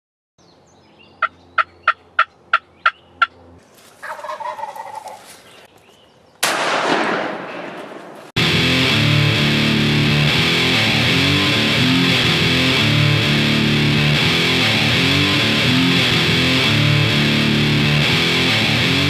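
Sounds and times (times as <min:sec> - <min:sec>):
turkey gobbling: 0:01.2 - 0:05.4
turkey yelps: 0:04.0 - 0:05.4
loud blast: 0:06.4 - 0:09.8
guitar music: 0:08.4 - 0:19.0.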